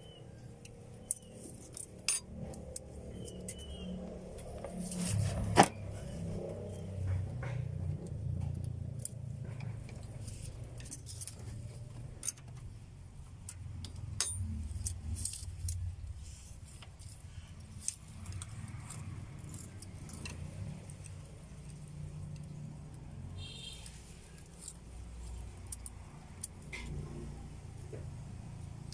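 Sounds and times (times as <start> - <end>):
metal tools clinking on engine: 0.1 - 8.1, 8.8 - 12.8, 13.5 - 22.6.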